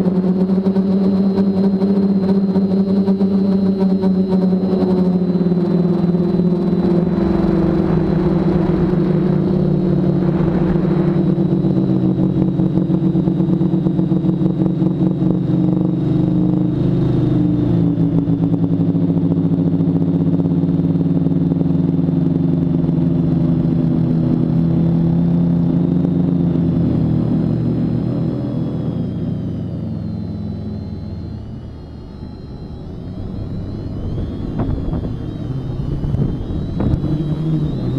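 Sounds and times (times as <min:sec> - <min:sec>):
quadcopter motors humming: 0:00.0 - 0:37.9
rushing burst: 0:05.8 - 0:12.7.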